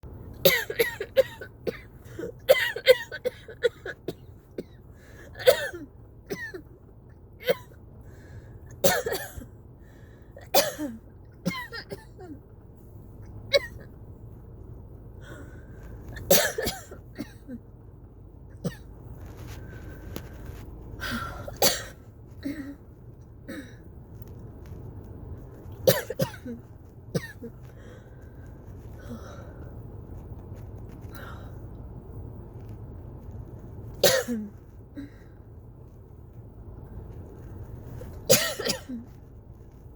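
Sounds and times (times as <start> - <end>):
person coughing: 0.4 - 4.8, 5.4 - 6.7, 8.8 - 9.4, 10.4 - 12.4, 16.2 - 17.6, 21.0 - 22.8, 25.9 - 27.5, 34.0 - 35.3, 38.3 - 39.1.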